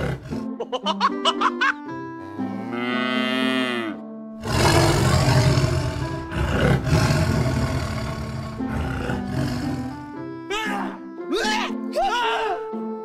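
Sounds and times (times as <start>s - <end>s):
background music: 0.0s - 13.0s
loud rough roar: 4.4s - 10.0s.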